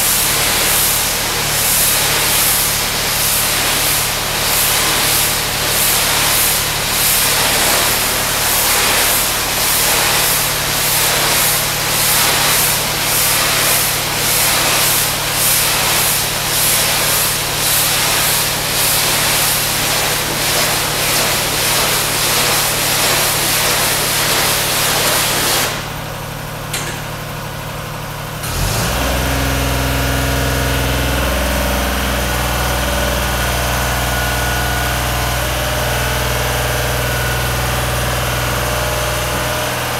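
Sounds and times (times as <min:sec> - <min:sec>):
pressure washer spray hissing: 0:00.0 - 0:26.0
pressure washer engine humming: 0:00.0 - 0:39.9.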